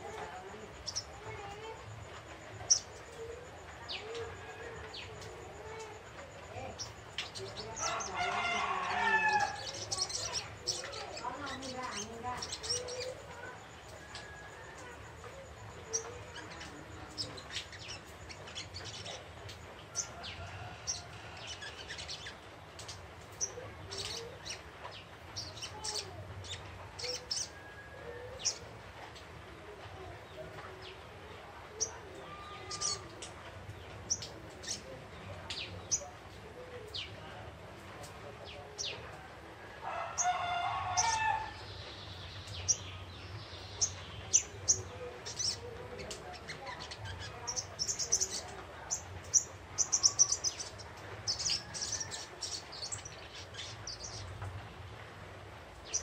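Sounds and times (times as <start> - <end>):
rooster crowing: 7.8 - 9.7, 39.7 - 41.6.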